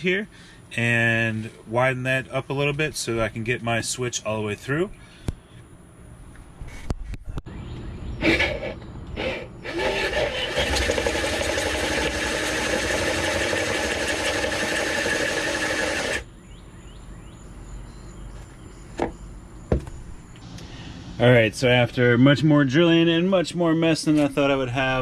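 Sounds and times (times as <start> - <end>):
power drill boring through plywood: 9.6 - 16.2.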